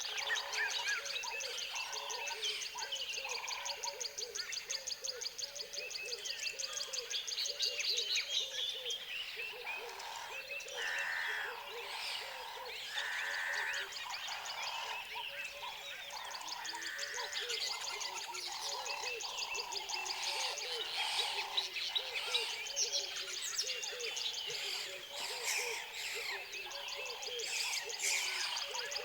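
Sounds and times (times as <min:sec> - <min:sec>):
birds calling: 0:09.8 - 0:29.0
frogs calling: 0:09.8 - 0:29.0.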